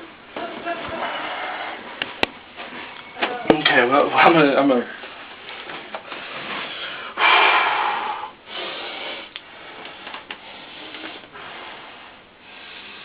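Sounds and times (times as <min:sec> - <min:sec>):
man breathing hard: 0:06.1 - 0:13.0.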